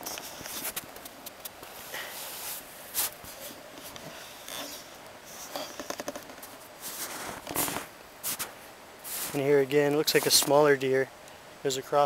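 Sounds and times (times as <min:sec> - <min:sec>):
clothing brushing: 0:01.7 - 0:05.5, 0:06.8 - 0:10.6
footsteps crunching in snow: 0:06.8 - 0:09.5.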